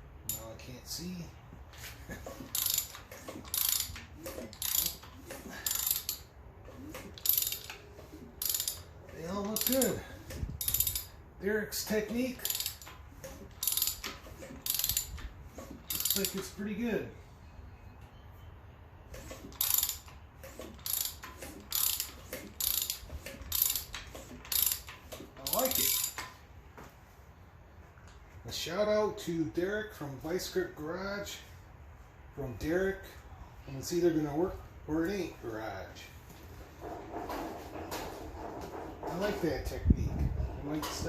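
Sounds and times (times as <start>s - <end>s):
ratchet wrench clicking: 2.4s - 6.3s, 6.9s - 11.2s, 11.8s - 16.6s, 19.2s - 26.3s.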